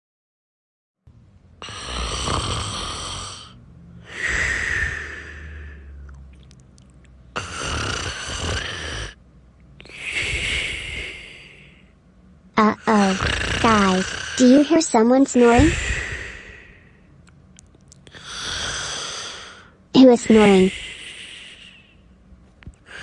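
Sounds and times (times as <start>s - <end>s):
person snoring: 1.6s - 6.0s, 7.4s - 9.2s, 9.8s - 11.8s, 12.6s - 17.0s, 18.1s - 22.0s.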